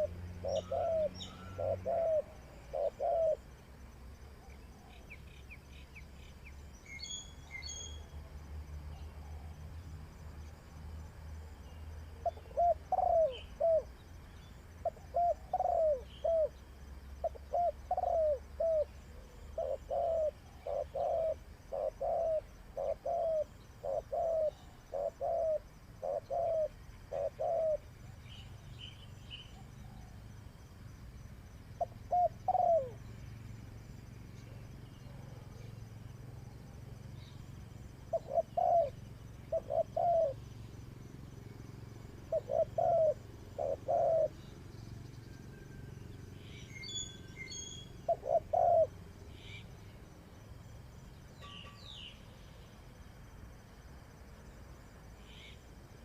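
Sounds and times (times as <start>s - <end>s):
small bird chirping: 0.0s - 3.4s, 4.3s - 8.2s, 11.6s - 30.3s, 31.6s - 50.4s, 51.1s - 52.8s, 55.2s - 55.7s
dove cooing: 0.0s - 3.5s, 12.1s - 14.0s, 14.8s - 16.6s, 17.2s - 27.9s, 31.8s - 33.1s, 38.0s - 40.5s, 42.1s - 44.5s, 47.9s - 49.6s.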